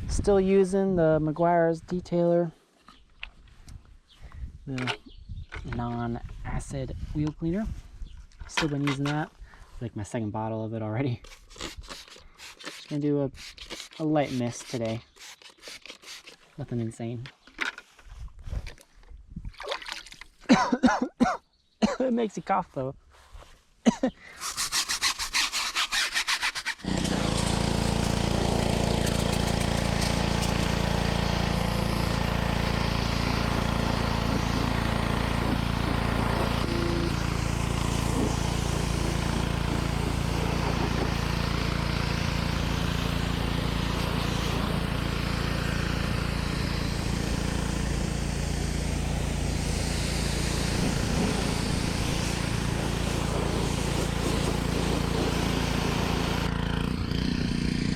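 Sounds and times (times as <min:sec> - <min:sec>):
rapid scrubbing strokes: 0:11.2 - 0:16.6, 0:24.4 - 0:41.7, 0:49.5 - 0:56.5
motor humming: 0:26.8 - 0:57.9.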